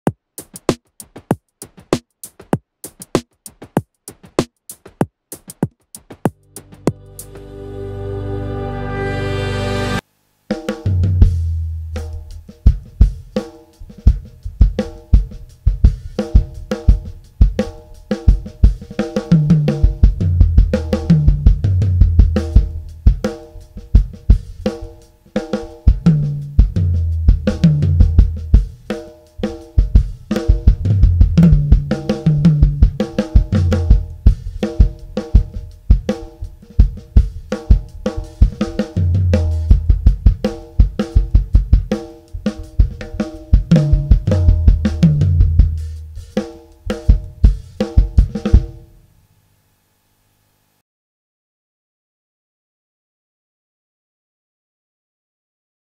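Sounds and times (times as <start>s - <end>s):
drum kit groove: 0.0s - 49.0s
low tom fills: 6.3s - 10.0s, 10.8s - 17.7s, 18.3s - 25.0s, 25.9s - 48.8s.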